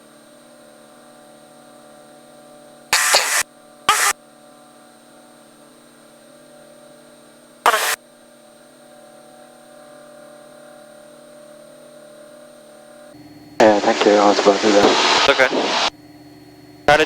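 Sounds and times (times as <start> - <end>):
small plane engine drone: 0.0 - 16.0
loud burst of noise: 3.0 - 4.2, 7.7 - 8.0, 13.6 - 15.9.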